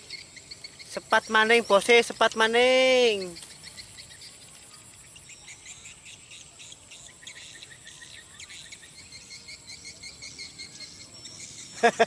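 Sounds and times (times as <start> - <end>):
crickets and insects chirping: 0.0 - 12.0.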